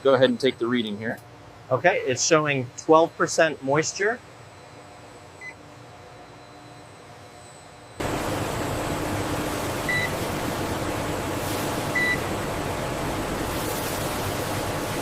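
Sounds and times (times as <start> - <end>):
factory machinery noise: 6.2 - 15.0.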